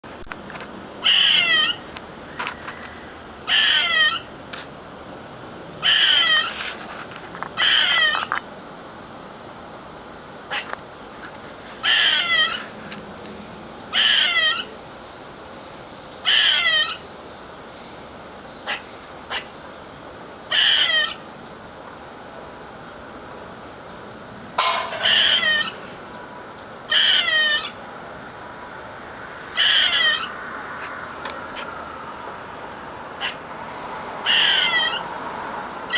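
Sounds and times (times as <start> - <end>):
squirrel chirping: 1.0 - 1.9, 3.5 - 4.3, 5.8 - 6.6, 7.6 - 8.3, 11.8 - 12.6, 13.9 - 14.8, 16.2 - 17.1, 20.5 - 21.3, 25.0 - 26.2, 26.9 - 27.8, 29.6 - 30.4, 34.2 - 35.0.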